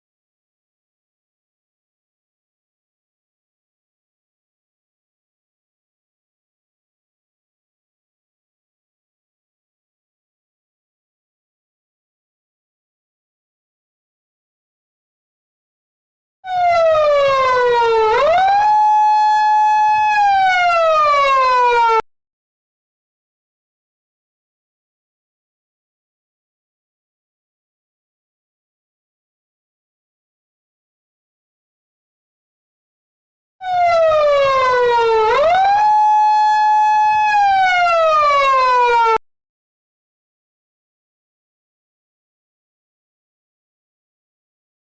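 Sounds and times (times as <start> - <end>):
police siren wailing: 16.5 - 22.0, 33.6 - 39.2.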